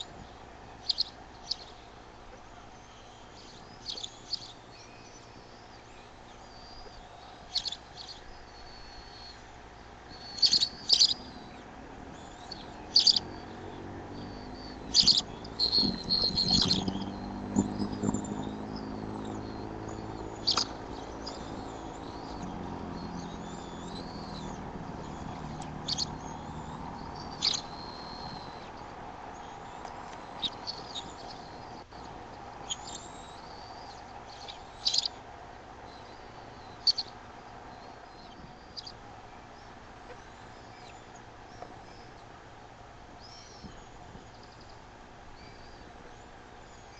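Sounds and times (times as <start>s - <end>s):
high bird chirps: 10.1s - 31.8s, 32.6s - 35.2s, 36.0s - 37.1s.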